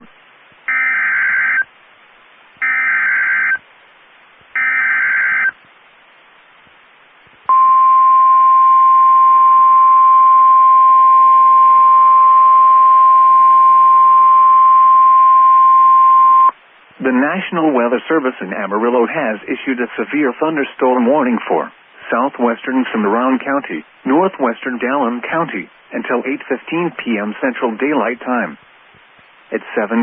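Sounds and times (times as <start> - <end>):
steady single-pitch alert tone: 7.5 - 16.5.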